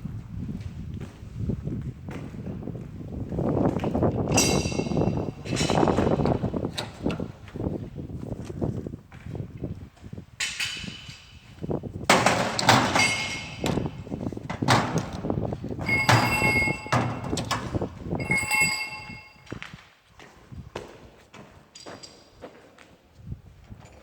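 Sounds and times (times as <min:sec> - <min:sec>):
heavy metal clanks ringing: 0:04.3 - 0:06.2, 0:12.8 - 0:13.9, 0:15.8 - 0:17.4, 0:18.2 - 0:19.5
metal parts knocking: 0:12.1 - 0:14.0, 0:14.6 - 0:19.3.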